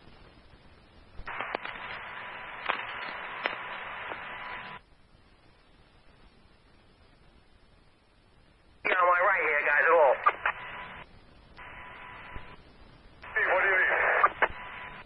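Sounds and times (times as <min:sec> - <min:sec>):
faint steady tone: 0:00.0 - 0:15.0
radio static hiss: 0:00.0 - 0:15.0
radio clicks: 0:01.2 - 0:04.6, 0:09.6 - 0:10.9, 0:13.2 - 0:15.0.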